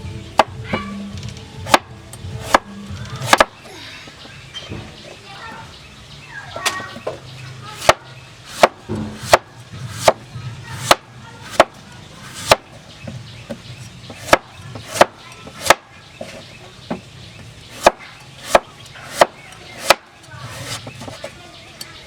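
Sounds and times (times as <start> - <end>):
knife chopping on cutting board: 2.4 - 3.5, 7.8 - 12.6, 17.7 - 20.9.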